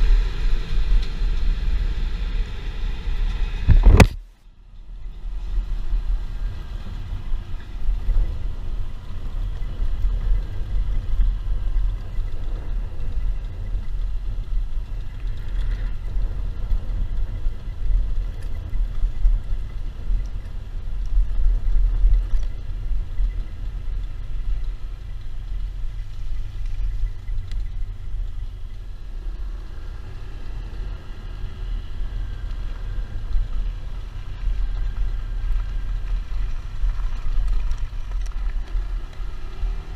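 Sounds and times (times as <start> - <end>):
wind buffeting microphone: 0.0 - 4.2
motorbike engine and road noise: 0.0 - 39.9.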